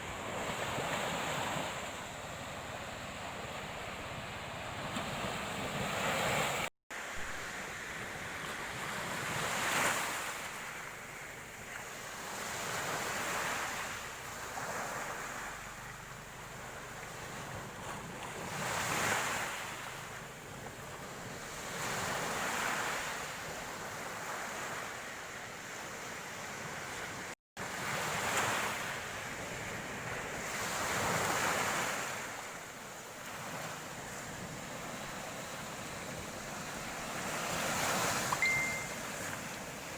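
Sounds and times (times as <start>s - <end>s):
sea waves breaking on beach: 0.0s - 39.9s.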